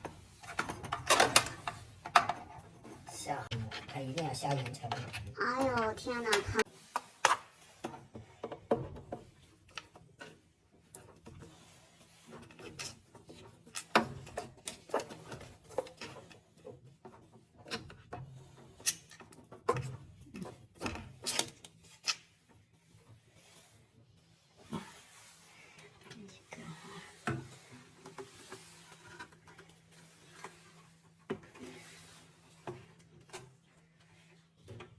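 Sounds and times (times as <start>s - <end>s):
tools clicking and scraping: 12.2s - 22.4s.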